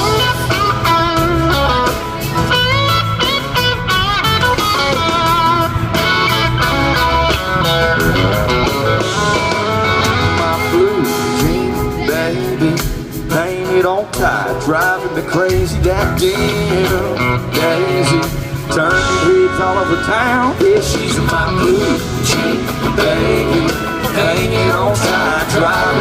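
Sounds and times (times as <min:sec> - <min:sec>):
electric guitar solo: 0:00.0 - 0:12.6
bass and drums: 0:00.0 - 0:26.0.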